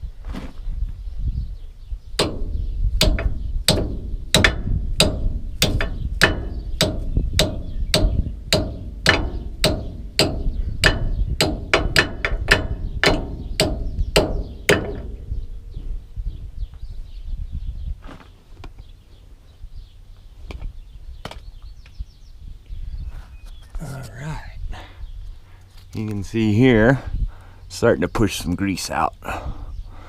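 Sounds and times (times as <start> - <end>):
hammer striking metal: 2.2 - 15.4.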